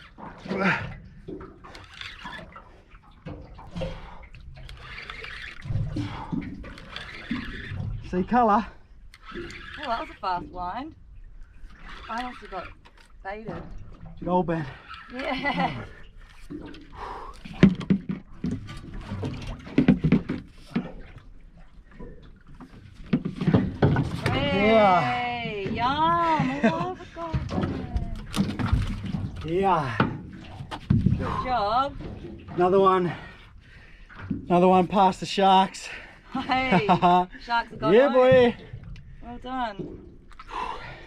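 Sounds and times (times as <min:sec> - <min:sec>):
water lapping against boat hull: 0:00.0 - 0:41.0
knocks and thumps on boat deck: 0:17.5 - 0:21.2, 0:23.0 - 0:32.8, 0:38.1 - 0:38.8.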